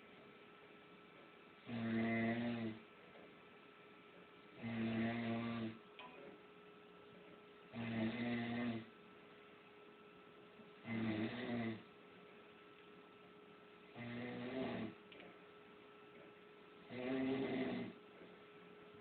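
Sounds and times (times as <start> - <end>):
faint steady hum: 0.0 - 19.0
person snoring: 1.7 - 2.8, 4.6 - 5.8, 7.7 - 8.9, 10.8 - 11.9, 13.9 - 15.0, 16.9 - 18.0.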